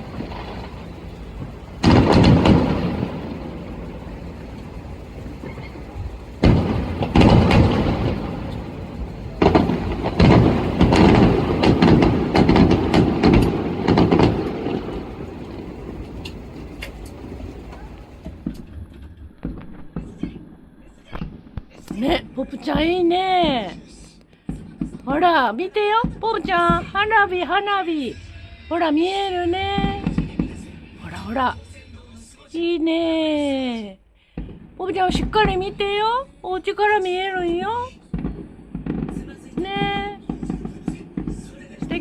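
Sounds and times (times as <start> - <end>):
distant fireworks booming: 0.0 - 20.6, 34.3 - 36.0, 38.0 - 42.0
firework crackles: 0.0 - 33.6, 34.4 - 42.0.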